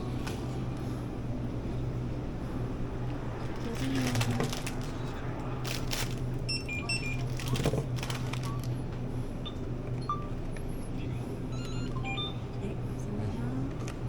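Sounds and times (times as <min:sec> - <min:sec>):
low hum: 0:00.0 - 0:07.4.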